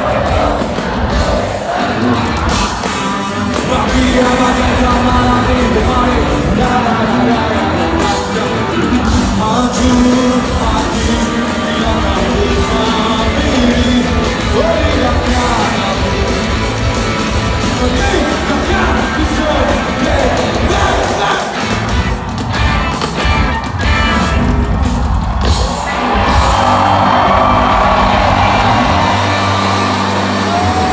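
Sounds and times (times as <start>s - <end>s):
lead singer singing: 0.0s - 21.9s
pop-rock band playing live: 0.0s - 30.9s.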